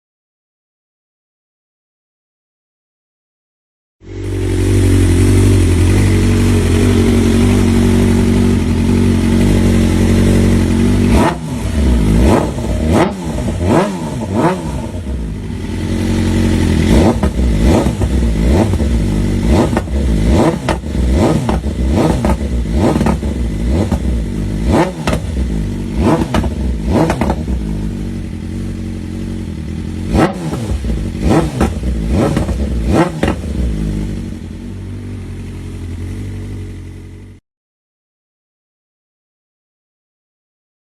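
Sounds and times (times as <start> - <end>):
motorcycle engine revving: 4.0 - 37.4.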